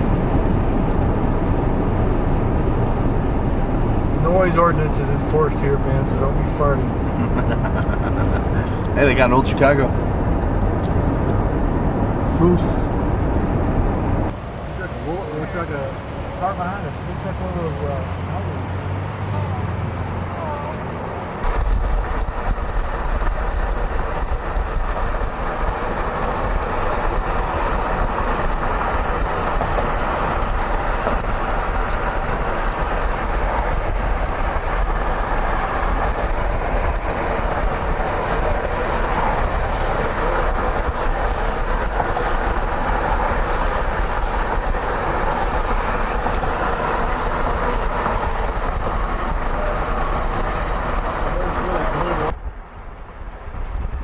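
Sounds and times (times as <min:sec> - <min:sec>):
car road and tyre rumble: 0:00.0 - 0:54.0.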